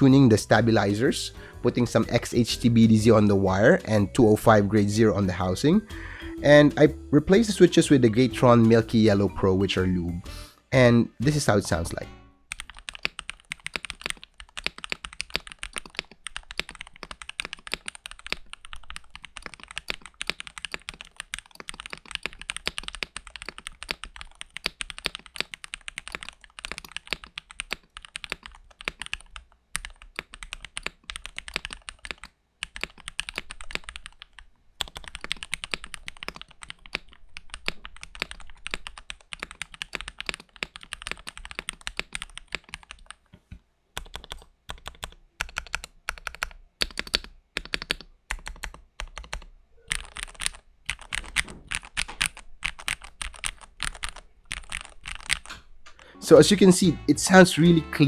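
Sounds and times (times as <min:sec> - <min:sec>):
fast typing on mechanical keyboard: 0:12.5 - 0:43.2, 0:44.0 - 0:55.5.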